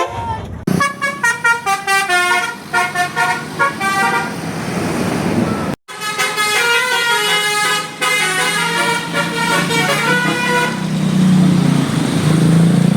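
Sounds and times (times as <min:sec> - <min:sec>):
musical bus horn tune: 0:00.0 - 0:04.4, 0:05.9 - 0:10.9.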